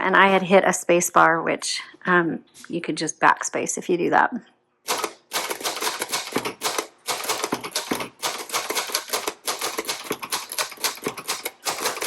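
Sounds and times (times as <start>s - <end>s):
typewriter keystrokes: 4.9s - 12.0s.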